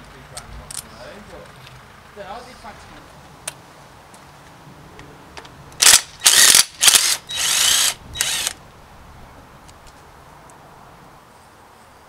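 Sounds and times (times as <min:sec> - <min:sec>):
ratchet clicking: 0:05.8 - 0:08.6.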